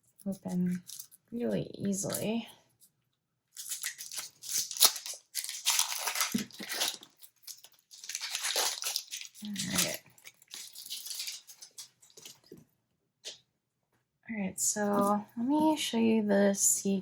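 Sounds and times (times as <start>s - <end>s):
plastic packaging crinkling: 0.0s - 2.4s, 3.6s - 12.6s.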